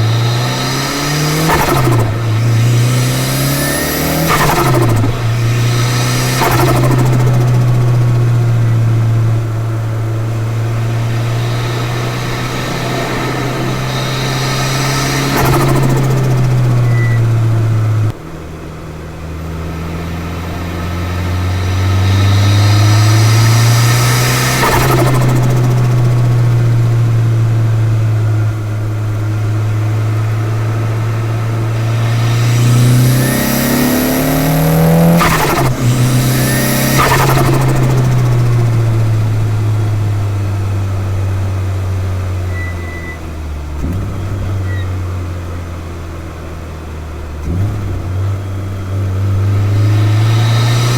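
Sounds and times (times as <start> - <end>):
turbocharged car engine revving: 0.0 - 18.5, 19.2 - 50.9
blow-off valve rushing release: 10.6 - 17.7, 31.5 - 39.7.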